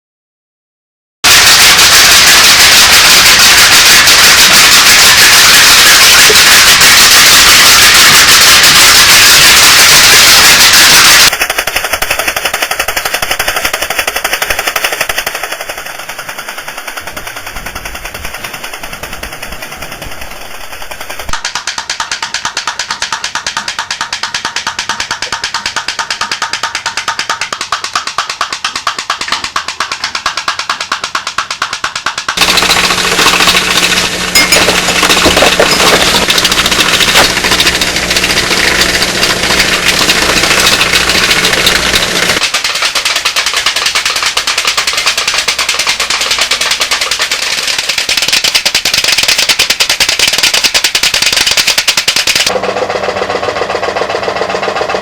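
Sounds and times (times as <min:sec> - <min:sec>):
toy boat engine popping: 0:01.2 - 0:55.0
steady low hum: 0:11.4 - 0:21.4, 0:32.4 - 0:42.4.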